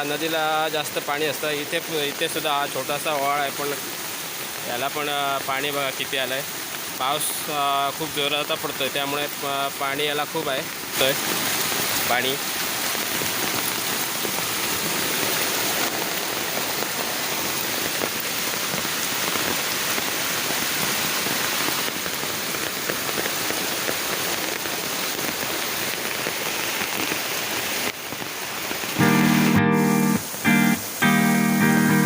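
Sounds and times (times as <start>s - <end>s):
heavy rain pouring: 0.0s - 32.0s
plucked guitar music: 29.0s - 32.0s.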